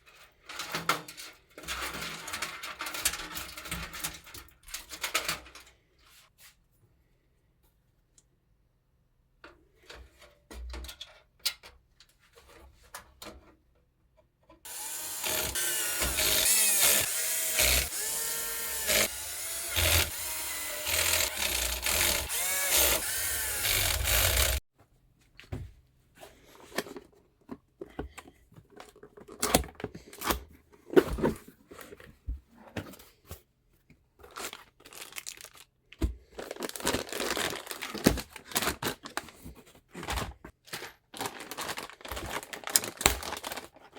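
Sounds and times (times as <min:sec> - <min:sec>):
electric drill motor whirring: 0:14.7 - 0:24.6.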